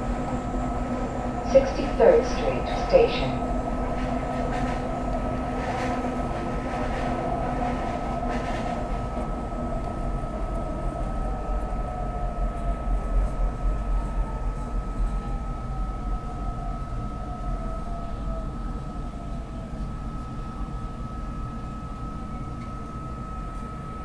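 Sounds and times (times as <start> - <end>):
train rumble: 0.0 - 16.6
train whine falling in pitch: 1.3 - 3.6.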